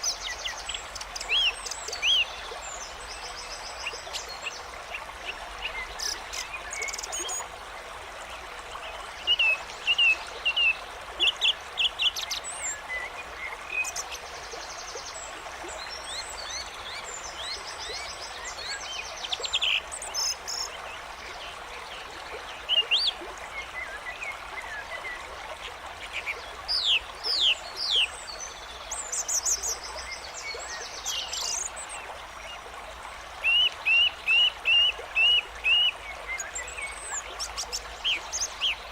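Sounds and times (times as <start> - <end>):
songbirds chirping and trilling: 0.0 - 7.8
running stream: 0.0 - 38.9.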